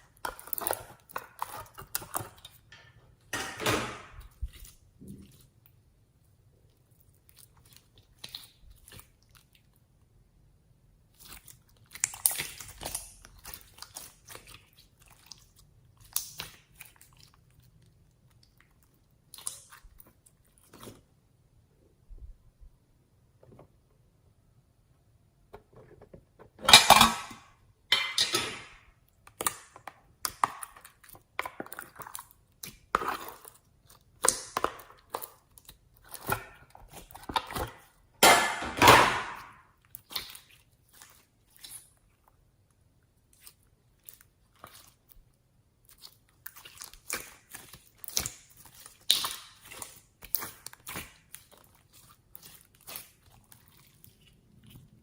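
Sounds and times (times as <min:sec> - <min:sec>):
slime squishing and crackling: 0:00.0 - 0:02.7, 0:04.2 - 0:10.1, 0:11.0 - 0:21.1, 0:29.0 - 0:38.2, 0:39.1 - 0:55.0.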